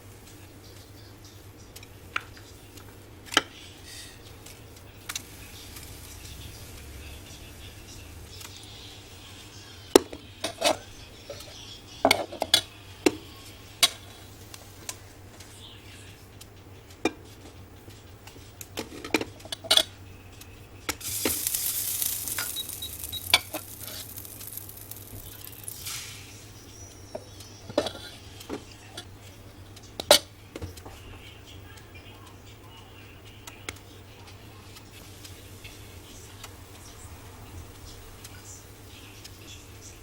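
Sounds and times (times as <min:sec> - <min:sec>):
steady hiss: 0:03.8 - 0:10.6, 0:21.0 - 0:26.9.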